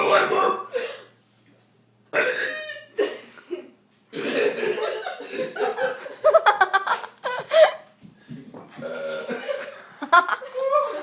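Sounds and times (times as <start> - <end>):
people laughing: 4.4 - 7.8, 9.1 - 11.0.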